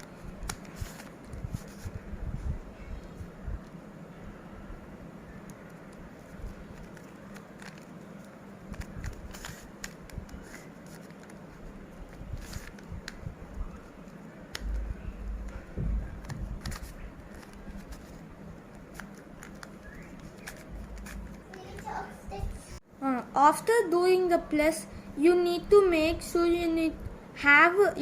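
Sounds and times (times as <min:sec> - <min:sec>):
plastic puzzle cube clicking: 0:06.7 - 0:08.0, 0:08.7 - 0:11.4, 0:16.2 - 0:21.5.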